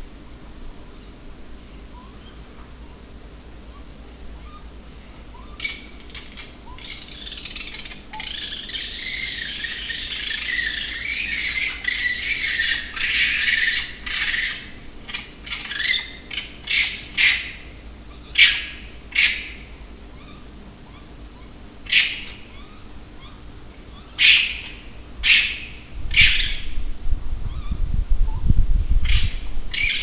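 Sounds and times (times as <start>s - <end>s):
animal screeching: 3.7s - 4.7s, 5.3s - 26.7s.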